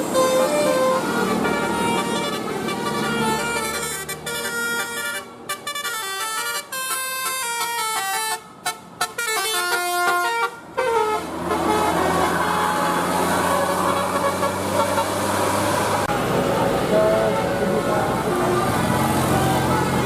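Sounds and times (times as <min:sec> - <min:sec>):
musical air horn melody: 0:00.0 - 0:15.2
loud engine and road noise: 0:00.0 - 0:20.0.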